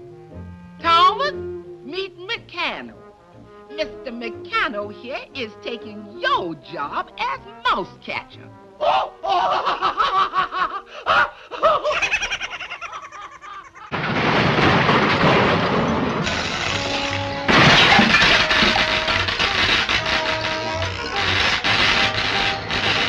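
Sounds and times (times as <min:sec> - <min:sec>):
orchestral music: 0:00.0 - 0:10.9, 0:16.1 - 0:23.0.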